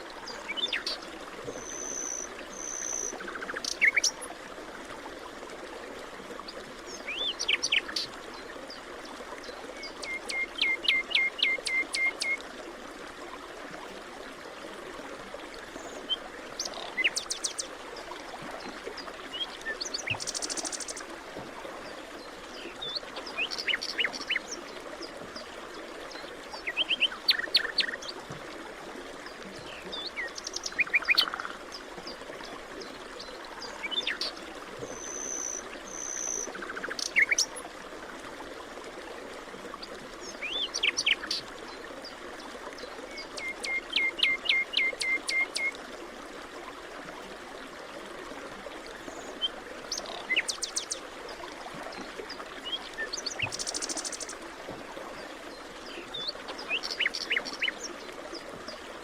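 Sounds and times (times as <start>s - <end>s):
songbirds chirping and trilling: 29.3s - 31.9s, 55.5s - 58.8s.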